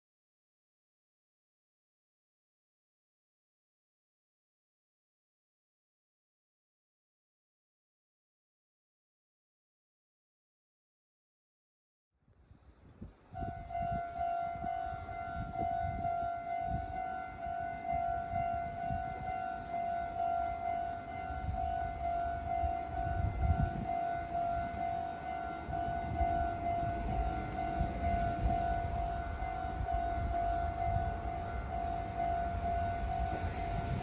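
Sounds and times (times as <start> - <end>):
level crossing alarm bell: 13.4 - 34.0.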